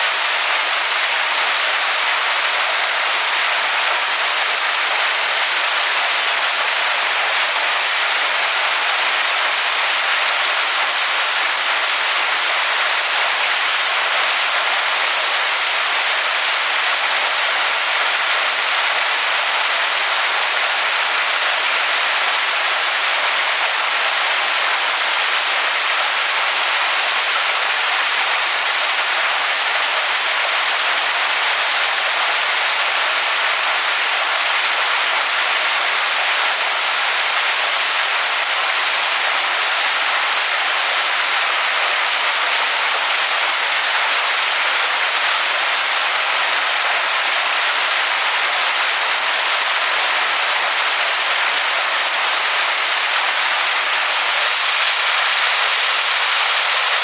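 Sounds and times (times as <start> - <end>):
waterfall pouring onto rocks: 0.1 - 57.0.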